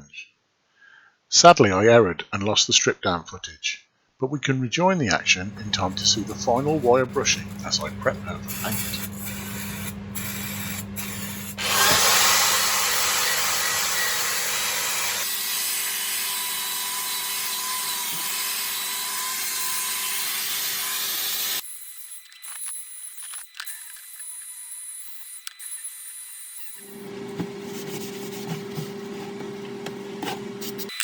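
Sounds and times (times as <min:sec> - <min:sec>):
wire brush scouring metal: 0:05.6 - 0:29.4.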